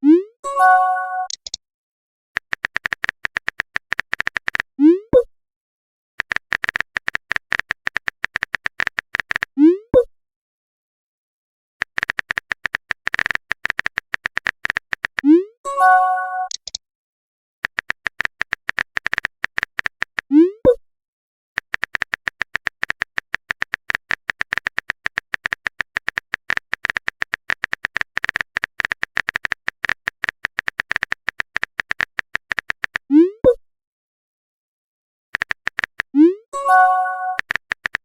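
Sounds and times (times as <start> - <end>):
phone keyboard typing clicks: 1.2 - 1.6, 2.4 - 4.7, 6.2 - 9.5, 11.8 - 15.3, 16.4 - 16.8, 17.6 - 20.3, 21.6 - 33.1, 35.4 - 38.0.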